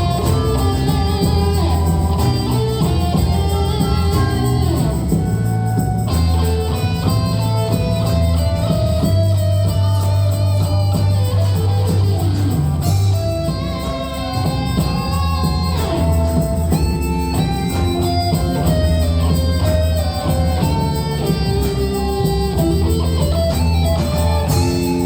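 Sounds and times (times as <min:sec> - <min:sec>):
plucked acoustic and electric guitars: 0:00.0 - 0:25.0
steady bass line: 0:00.0 - 0:25.0.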